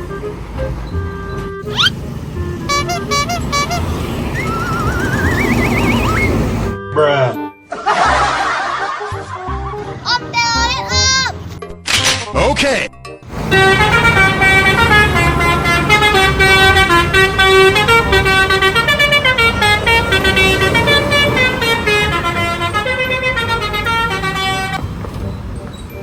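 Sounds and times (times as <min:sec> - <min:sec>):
low engine rumble: 0:00.0 - 0:06.8, 0:13.3 - 0:26.0
musical bus horn melody: 0:00.0 - 0:07.4, 0:13.3 - 0:25.6.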